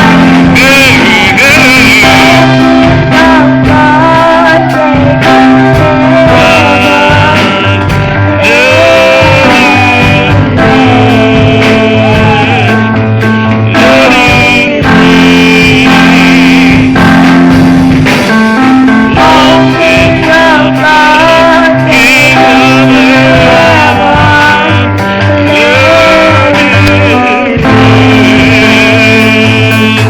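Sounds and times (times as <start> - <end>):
live gospel worship music: 0.0 - 30.0.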